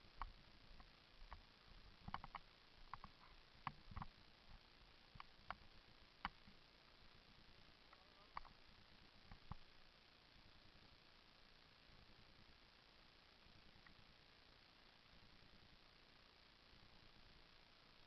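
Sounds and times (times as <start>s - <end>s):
faint short clicks and ticks: 0.1s - 6.6s, 7.9s - 8.6s.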